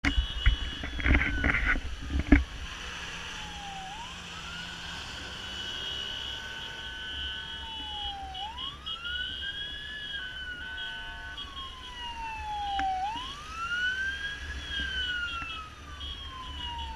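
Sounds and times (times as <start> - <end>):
fire engine wail siren: 0.4 - 16.9.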